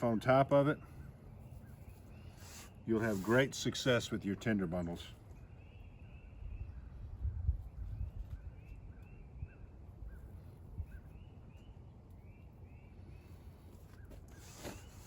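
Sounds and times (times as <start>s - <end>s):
small birds chirping: 0.0s - 15.0s
wind rumble on microphone: 6.2s - 11.3s.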